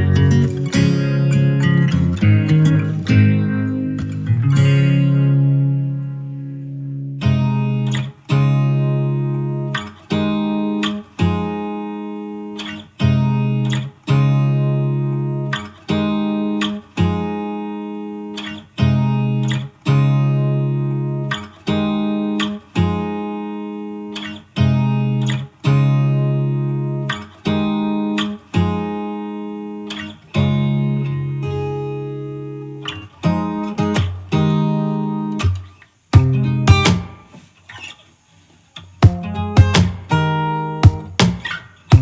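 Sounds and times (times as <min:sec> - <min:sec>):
strummed acoustic guitar: 0:00.0 - 0:42.0.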